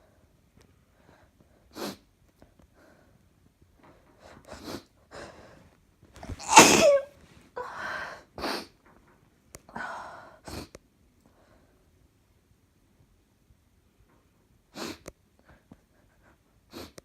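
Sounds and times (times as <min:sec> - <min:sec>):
quick breaths and sniffs: 0:04.1 - 0:06.6, 0:14.8 - 0:17.0
person sneezing: 0:06.3 - 0:07.1.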